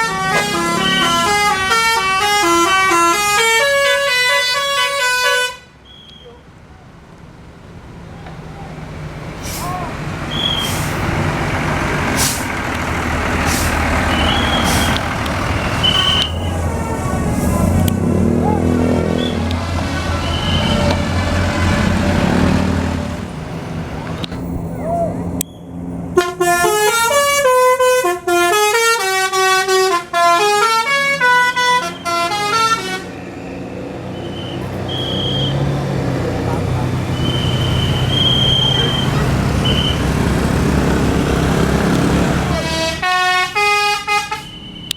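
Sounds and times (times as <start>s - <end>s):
musical air horns playing a tune: 0.0s - 5.7s, 26.2s - 33.2s, 42.5s - 44.7s
bus engine and road noise: 0.0s - 44.9s
sharp air hisses: 9.4s - 9.8s, 10.5s - 11.1s, 12.2s - 12.5s, 13.4s - 13.8s, 14.4s - 15.1s.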